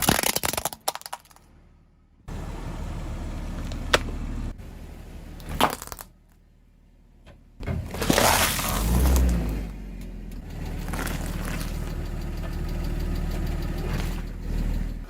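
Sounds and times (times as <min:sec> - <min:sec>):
tyres crushing objects: 0:00.0 - 0:01.5, 0:05.4 - 0:06.2, 0:07.6 - 0:09.4, 0:10.8 - 0:11.9
low engine hum: 0:01.4 - 0:15.0.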